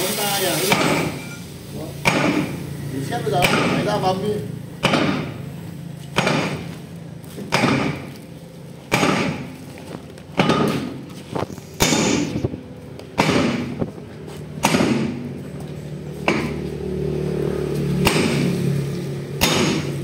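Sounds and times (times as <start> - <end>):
hammer striking steel: 0.7 - 1.4, 2.0 - 2.6, 3.4 - 3.9, 4.8 - 5.4, 6.1 - 6.7, 7.5 - 8.1, 8.9 - 9.6, 10.4 - 11.0, 11.8 - 12.4, 13.2 - 13.8, 14.6 - 15.3, 16.2 - 16.7, 18.0 - 18.6, 19.4 - 20.0.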